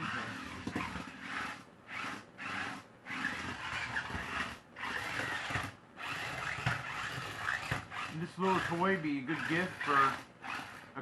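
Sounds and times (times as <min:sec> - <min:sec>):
toy car motor whirring: 0:00.0 - 0:11.0.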